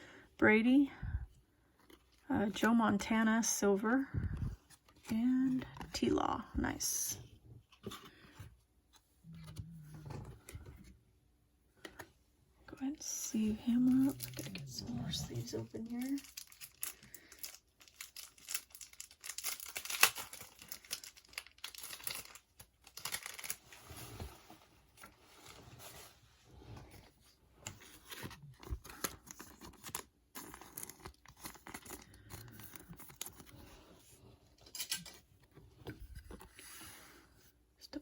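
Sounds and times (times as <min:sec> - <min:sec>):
rustling of cards: 0:13.3 - 0:37.2
plastic wrap tearing and crinkling: 0:15.4 - 0:24.2.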